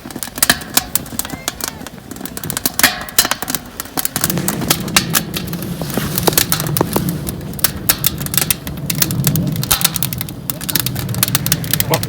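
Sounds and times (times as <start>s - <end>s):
wood fire crackling and popping: 0.0s - 12.0s
low steady rumble: 3.3s - 12.0s.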